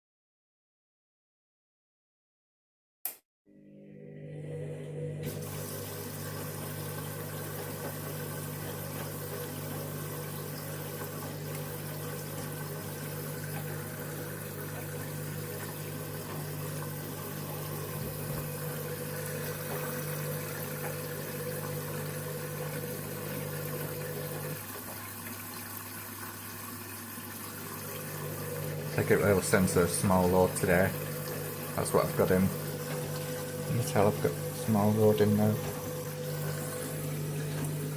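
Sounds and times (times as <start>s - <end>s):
washing machine hum: 3.5s - 37.9s
water running into drum: 5.2s - 37.9s.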